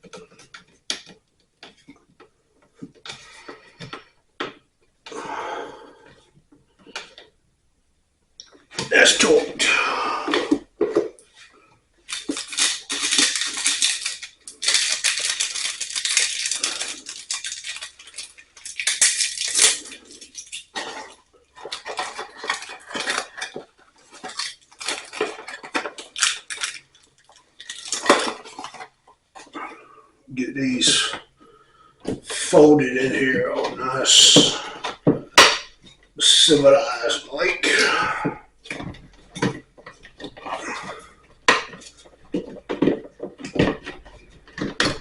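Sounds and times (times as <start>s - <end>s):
wires and hardware clinking: 11.2s - 29.5s.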